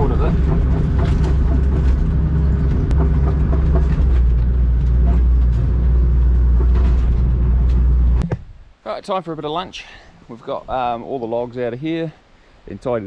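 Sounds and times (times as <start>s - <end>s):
excavator diesel engine rumbling: 0.0s - 8.2s.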